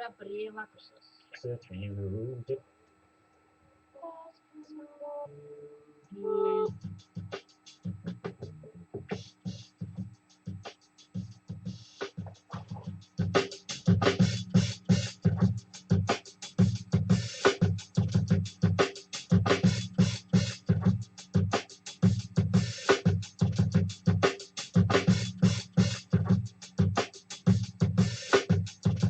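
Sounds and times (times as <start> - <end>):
synth and drum machine music: 6.7 - 29.0.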